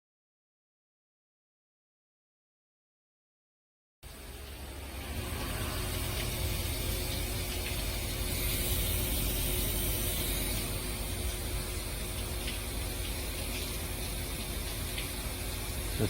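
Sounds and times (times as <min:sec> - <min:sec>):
hose water spraying on glass: 0:04.1 - 0:16.0.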